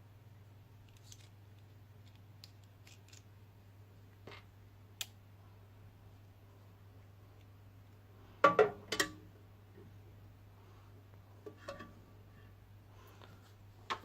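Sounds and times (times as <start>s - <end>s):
low steady hum: 0.0s - 14.0s
small metal parts clicking: 2.0s - 3.3s.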